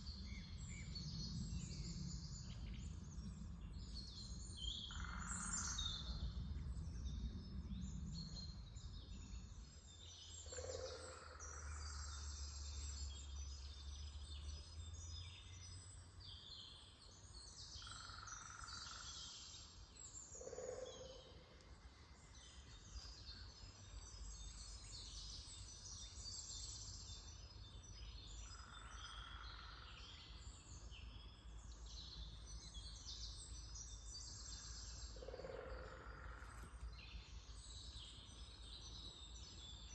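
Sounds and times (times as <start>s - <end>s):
songbirds singing and chirping: 0.0s - 39.9s
low rumble: 5.5s - 10.4s.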